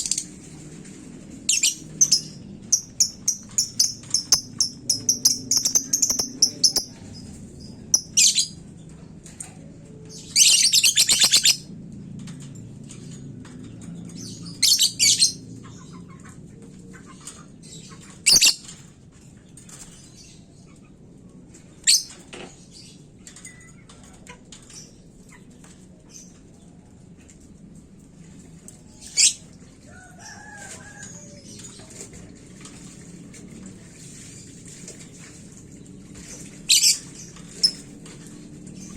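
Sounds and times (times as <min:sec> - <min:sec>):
lovebird shrill calls: 0:03.6 - 0:06.9, 0:10.4 - 0:11.6, 0:18.3 - 0:18.6.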